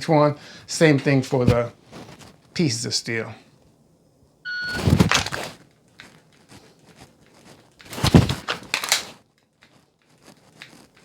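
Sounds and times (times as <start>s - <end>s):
shot timer beep: 4.5s - 4.9s
pistol handling clatter: 7.7s - 9.8s.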